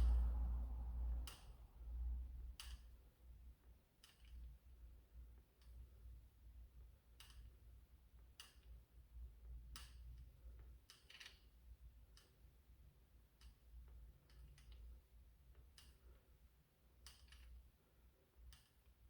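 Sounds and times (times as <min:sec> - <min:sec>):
low hum: 0:00.0 - 0:02.5.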